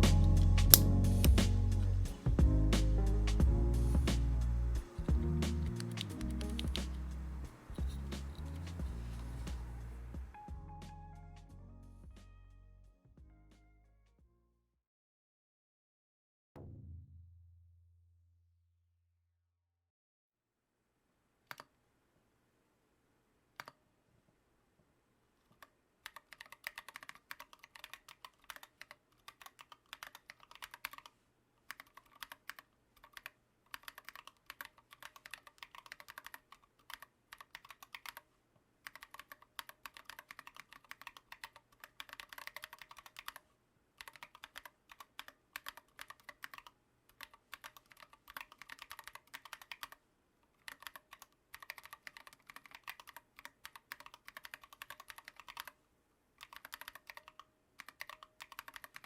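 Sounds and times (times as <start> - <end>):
typing on keyboard: 5.6 - 7.1, 25.6 - 31.1, 31.7 - 43.4, 44.0 - 50.0, 50.6 - 55.8, 56.4 - 59.0.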